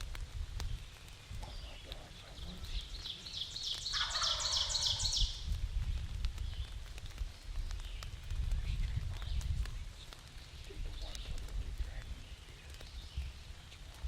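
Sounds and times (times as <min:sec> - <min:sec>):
turkey gobbling: 0:02.6 - 0:05.4.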